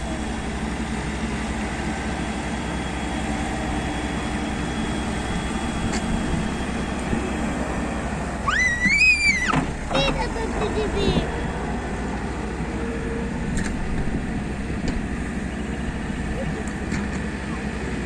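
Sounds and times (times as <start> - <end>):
diesel engine running: 0.0 - 18.0
high rising and falling cry: 8.4 - 9.7.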